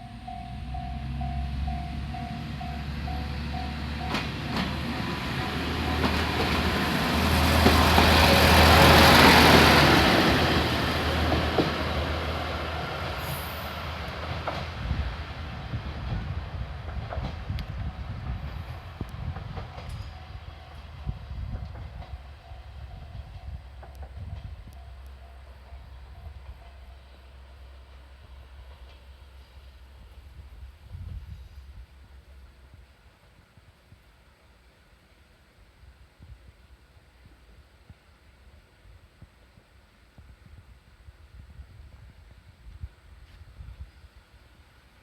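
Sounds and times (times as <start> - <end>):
level-crossing bell dinging: 0.0 - 4.8
train wheel noise: 0.0 - 34.2
railcar engine hum: 0.0 - 45.0
wheels clicking over rail joints: 0.2 - 9.9.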